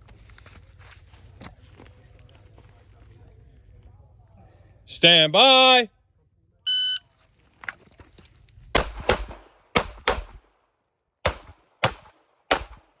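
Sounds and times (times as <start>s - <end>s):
pistol shots with echo: 8.8s - 10.5s, 11.2s - 13.0s.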